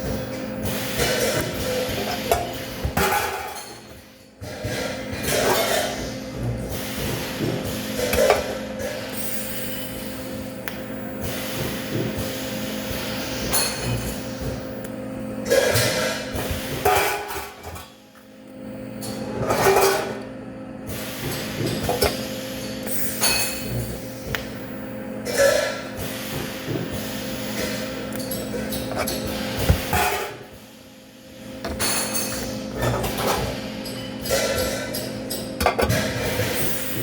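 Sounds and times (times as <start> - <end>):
steady machine hum: 0.0 - 37.0.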